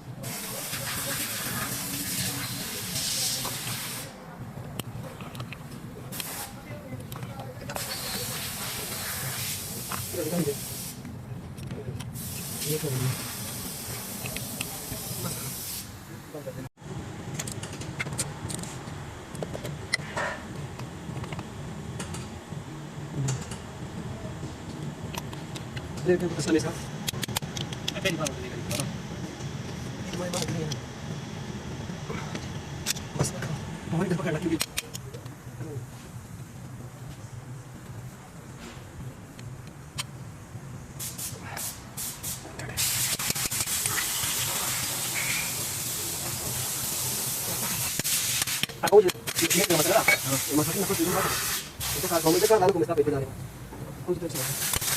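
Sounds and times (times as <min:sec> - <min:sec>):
steady hiss: 0:00.0 - 0:04.2, 0:06.0 - 0:06.9, 0:07.7 - 0:11.1, 0:12.1 - 0:16.7, 0:39.2 - 0:54.9
steady low hum: 0:00.0 - 0:54.9.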